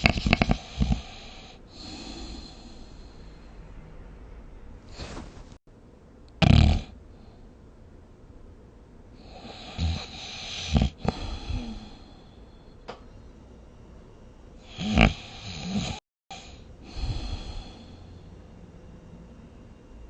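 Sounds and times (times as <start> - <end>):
person snoring: 0.0 - 3.4, 6.4 - 7.0, 9.2 - 12.4, 14.6 - 18.4
quiet breathing: 0.0 - 5.6, 6.9 - 7.8, 9.1 - 20.0.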